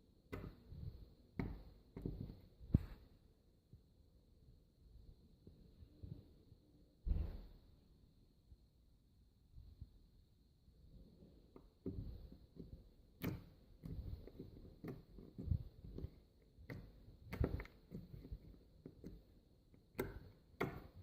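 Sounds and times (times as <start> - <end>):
slime squelching and clicking: 11.6 - 21.0.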